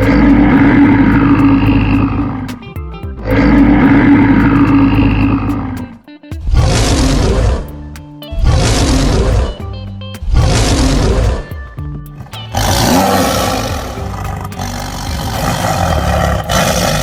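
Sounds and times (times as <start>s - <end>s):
animal harsh roars: 0.0s - 2.5s, 3.2s - 5.8s, 6.5s - 7.8s, 8.4s - 9.6s, 10.3s - 11.5s, 12.6s - 17.0s
large animal long rough call: 0.0s - 2.5s, 3.3s - 5.8s, 6.6s - 7.7s, 12.6s - 17.0s
background music: 0.0s - 17.0s.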